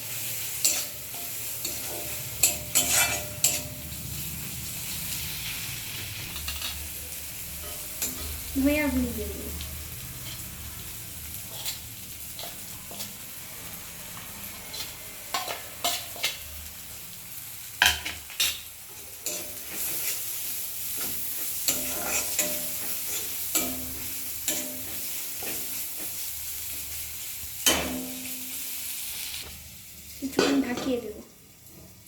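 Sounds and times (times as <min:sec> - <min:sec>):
paste sizzling in oil: 0:00.0 - 0:32.0
spatula scraping a pan: 0:00.5 - 0:04.0, 0:10.2 - 0:10.6, 0:11.4 - 0:13.3, 0:17.8 - 0:26.9.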